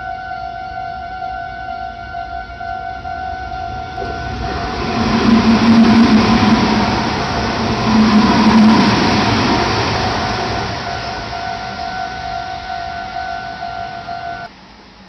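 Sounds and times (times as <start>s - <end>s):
level-crossing alarm bell: 0.0s - 14.5s
train passing: 3.0s - 14.5s.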